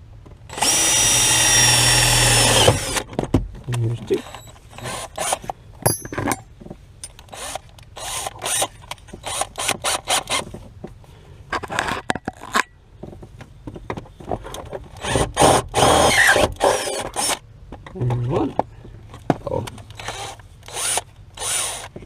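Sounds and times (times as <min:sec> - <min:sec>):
power drill boring through metal: 0:00.5 - 0:03.0, 0:15.0 - 0:17.4, 0:20.0 - 0:22.0.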